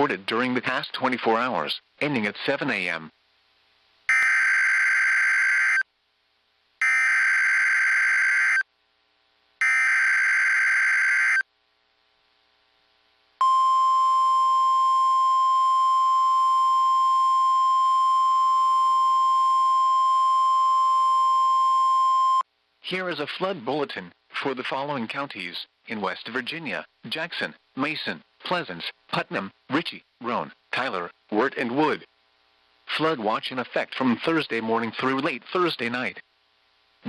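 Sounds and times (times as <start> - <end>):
screechy digital data tones: 4.1 - 5.8, 9.6 - 11.4
steady warning alarm tone: 4.1 - 5.8, 6.8 - 8.6, 9.6 - 11.4.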